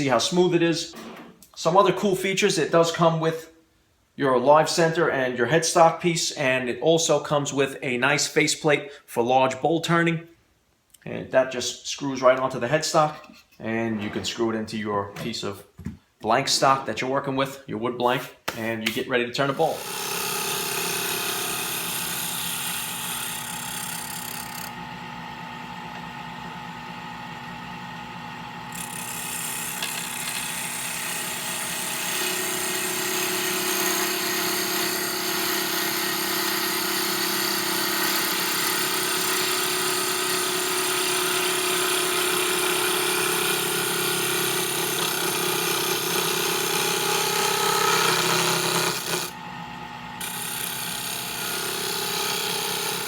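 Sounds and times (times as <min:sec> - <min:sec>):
turning tool cutting wood: 0:18.8 - 0:53.0
lathe motor hum: 0:19.8 - 0:53.0.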